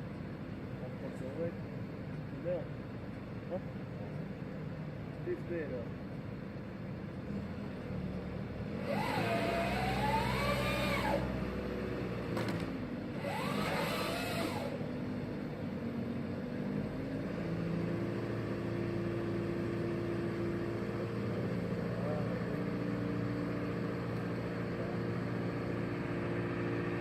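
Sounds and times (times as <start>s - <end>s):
saw chain cutting: 8.8s - 11.4s, 13.2s - 14.8s
machine engine running: 8.8s - 15.2s.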